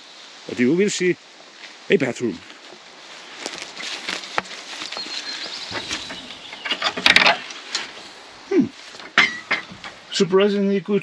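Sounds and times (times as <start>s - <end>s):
small knocks clicks and rustles: 3.5s - 8.1s, 8.9s - 10.1s
rattling scrape: 5.6s - 8.2s.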